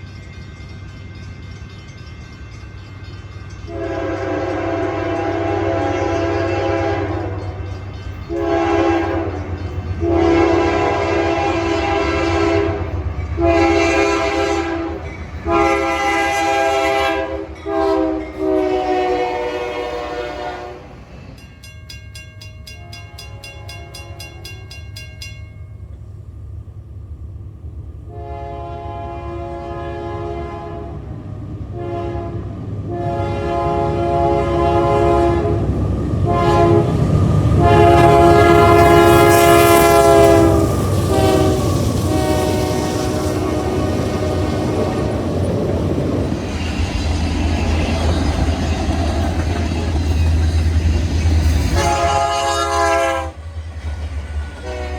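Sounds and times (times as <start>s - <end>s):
train rumbling: 0.0s - 54.9s
locomotive air horn blasts: 3.7s - 7.4s, 8.3s - 20.9s, 28.1s - 31.1s, 31.7s - 37.0s, 37.6s - 45.1s, 51.6s - 53.4s, 54.6s - 54.9s.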